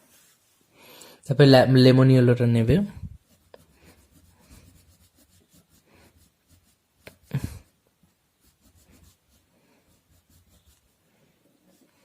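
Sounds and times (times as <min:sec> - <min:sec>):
colouring tool scratching paper: 0:02.8 - 0:11.0.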